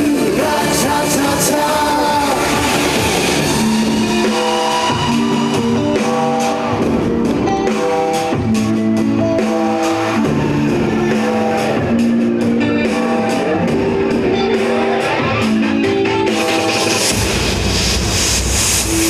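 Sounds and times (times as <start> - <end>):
person singing: 0.0 - 6.9
band playing guitar and drums: 0.0 - 18.3.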